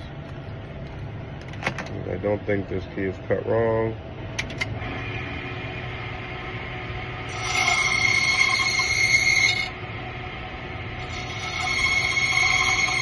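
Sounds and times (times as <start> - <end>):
motor humming: 4.2 - 13.0
key-cutting machine shaving metal: 7.2 - 9.8, 11.0 - 13.0.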